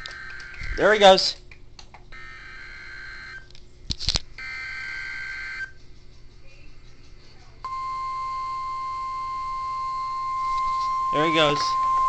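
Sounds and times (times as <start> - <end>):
steady warning alarm tone: 0.0 - 1.2, 2.1 - 3.5, 4.4 - 5.8, 7.6 - 12.0.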